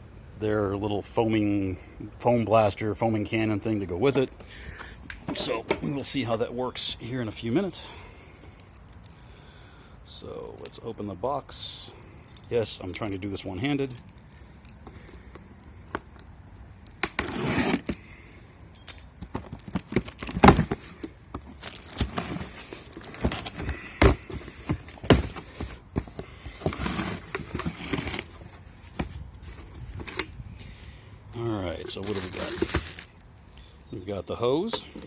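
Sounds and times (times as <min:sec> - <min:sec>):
cardboard and plastic packaging rustling: 0:19.1 - 0:30.8, 0:31.6 - 0:33.3.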